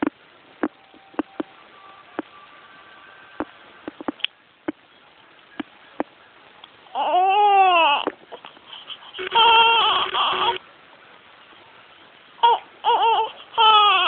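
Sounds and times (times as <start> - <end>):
baby crying: 6.9 - 8.1, 9.1 - 10.6, 12.4 - 14.0.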